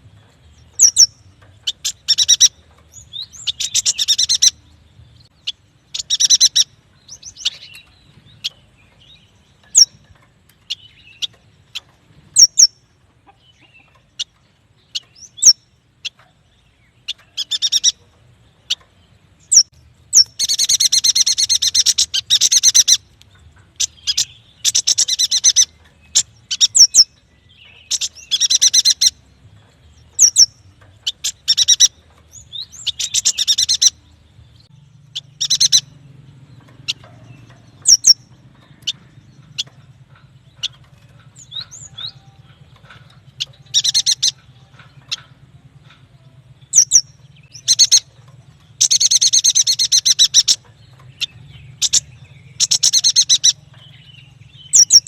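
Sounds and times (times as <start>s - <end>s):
bird singing chattering trills: 0.0s - 55.0s.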